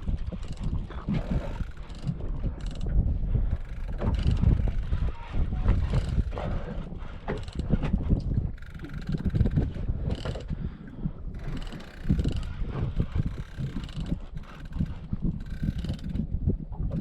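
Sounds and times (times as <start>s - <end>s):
fishing reel ratcheting: 0.4s - 2.9s, 3.5s - 5.0s, 7.3s - 7.7s, 8.5s - 10.5s, 11.4s - 16.2s.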